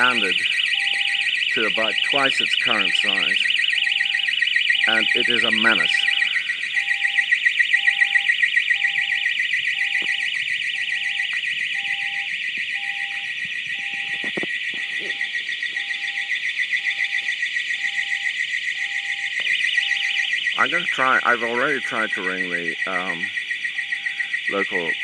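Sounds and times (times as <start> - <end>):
low repeating beep: 0.0 - 16.3
high-pitched pulsing alarm ring: 0.0 - 25.0.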